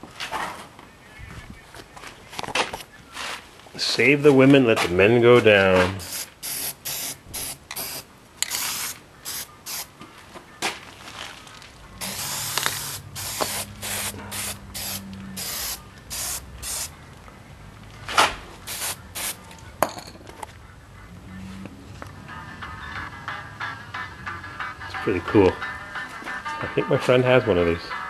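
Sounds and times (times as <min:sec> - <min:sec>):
spray paint can hissing: 0:06.0 - 0:09.9, 0:12.0 - 0:16.9, 0:18.6 - 0:19.4.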